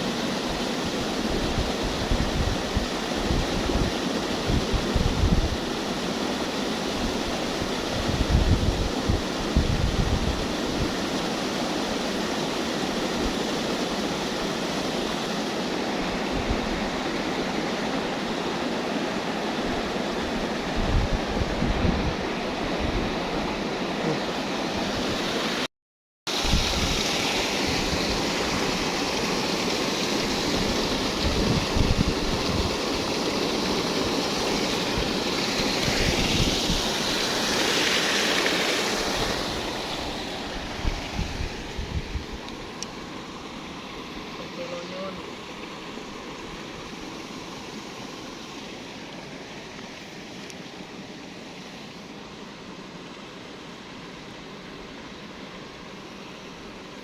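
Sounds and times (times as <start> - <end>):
rushing water: 0.0 - 25.7, 26.3 - 57.0
wind buffeting microphone: 1.0 - 5.7, 7.0 - 11.0, 20.3 - 23.4, 30.3 - 37.0, 39.0 - 42.7.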